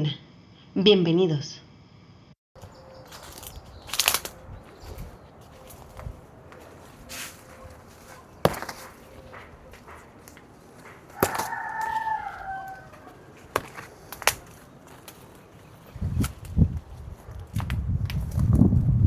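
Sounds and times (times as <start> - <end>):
chicken crowing: 6.9 - 14.9
sharp knocks: 7.7 - 14.6.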